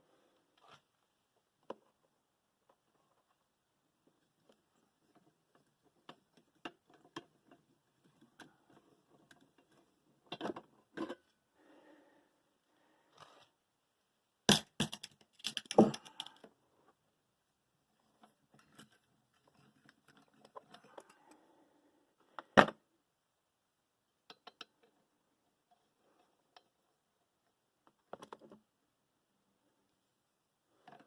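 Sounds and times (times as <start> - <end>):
small hard objects clattering: 14.5 - 16.4.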